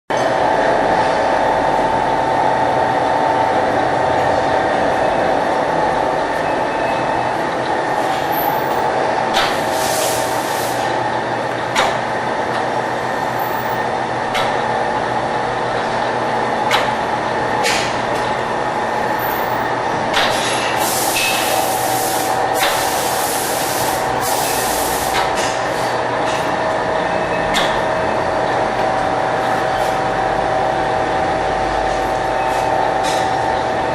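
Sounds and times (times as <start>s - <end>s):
burst of hiss: 20.8s - 25.2s.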